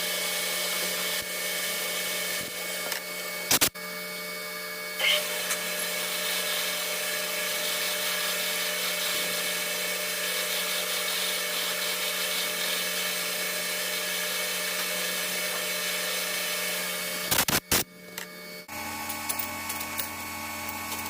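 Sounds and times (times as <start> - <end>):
lathe humming: 4.0 - 17.3.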